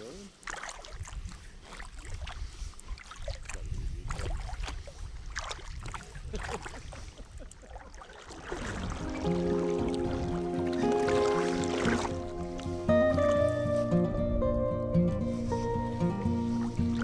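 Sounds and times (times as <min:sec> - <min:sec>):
paddle strokes splashing water: 0:00.0 - 0:14.4, 0:15.2 - 0:17.0
music: 0:09.0 - 0:17.0.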